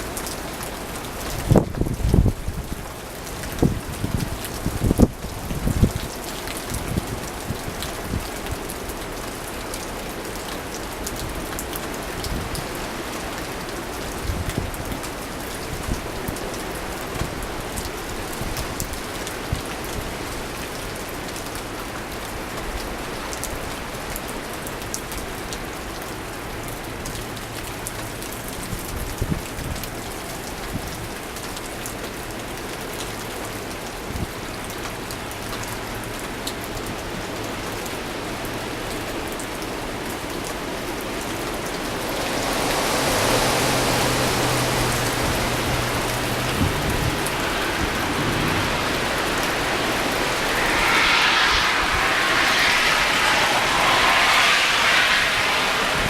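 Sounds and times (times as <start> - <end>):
low rumble: 41.8 - 56.0.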